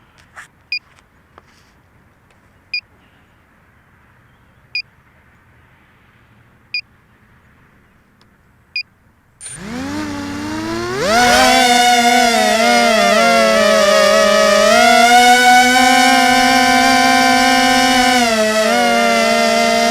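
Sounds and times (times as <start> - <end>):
drone motors whining: 9.4 - 19.9.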